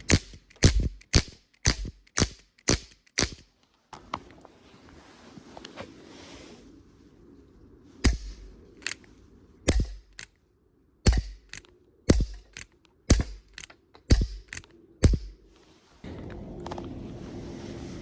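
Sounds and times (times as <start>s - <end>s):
air revolver shots: 0.0s - 3.4s, 9.7s - 10.2s, 11.0s - 15.4s.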